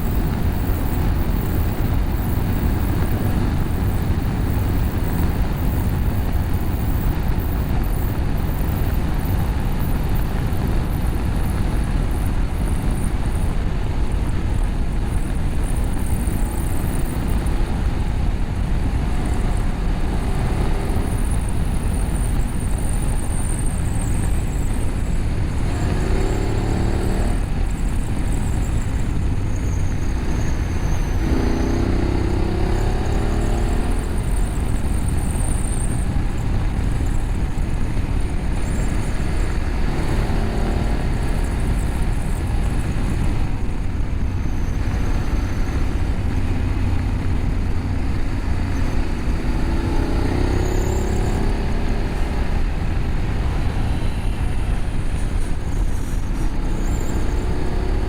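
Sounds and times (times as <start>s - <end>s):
motorcycle engine accelerating: 0.0s - 58.0s
wind and road rumble: 0.0s - 58.0s.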